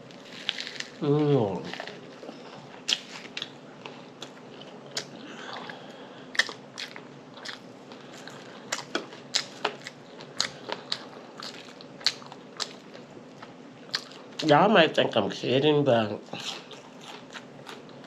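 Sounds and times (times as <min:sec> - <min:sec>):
person chewing crunchy food: 0:00.0 - 0:14.5, 0:16.3 - 0:18.0.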